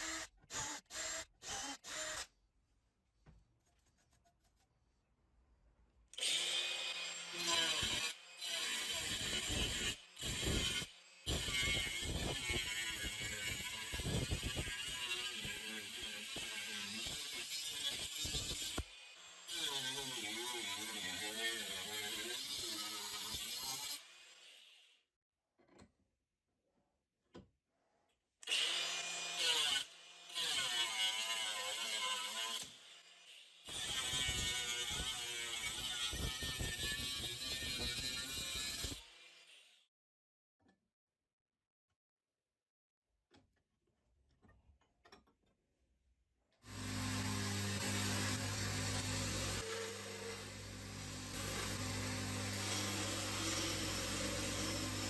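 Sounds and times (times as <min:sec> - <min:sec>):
angle grinder motor running: 0:46.7 - 0:55.0.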